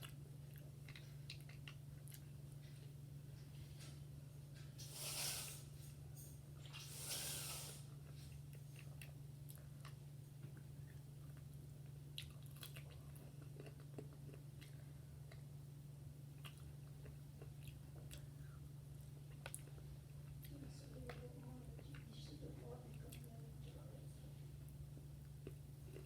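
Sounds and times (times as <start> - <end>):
chewing and crunching food: 0.0 - 3.9, 7.9 - 26.0
short hiss: 4.8 - 5.8, 6.8 - 7.9.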